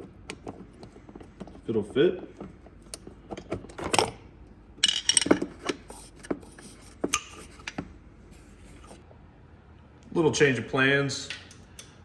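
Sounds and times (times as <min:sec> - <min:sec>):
metal tools clinking and rattling: 0:04.8 - 0:06.1
tool scrapes: 0:08.3 - 0:09.0.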